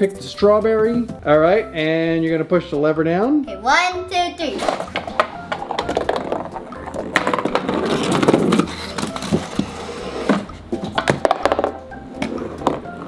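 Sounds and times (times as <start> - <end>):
balls rolling down cardboard ramps: 4.5 - 13.0
clattering knocks: 4.6 - 13.0.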